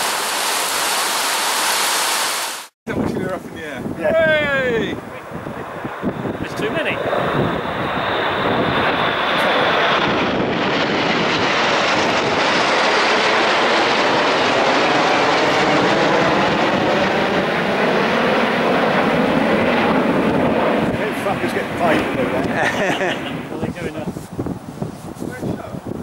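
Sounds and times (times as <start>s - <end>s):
jet roar flying past: 3.5s - 24.1s.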